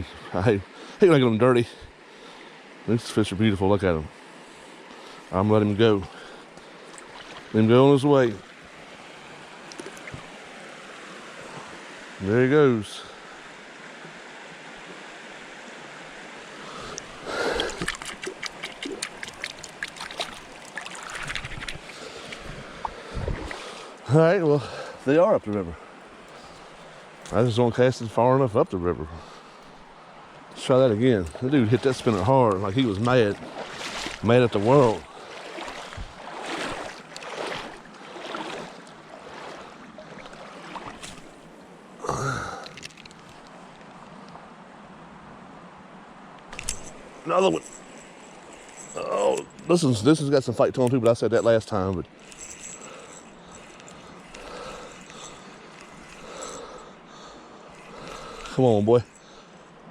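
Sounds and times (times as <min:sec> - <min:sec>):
stream water flowing: 0:00.0 - 0:59.9
small water splashes: 0:06.0 - 0:11.8, 0:16.6 - 0:24.1, 0:29.2 - 0:41.6, 0:46.5 - 0:50.0, 0:50.9 - 0:59.8
loud water splash: 0:17.2 - 0:22.0, 0:31.6 - 0:41.3.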